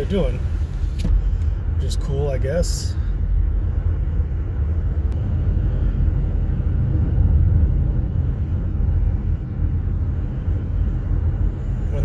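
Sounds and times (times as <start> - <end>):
car cabin road rumble: 0.0 - 12.0.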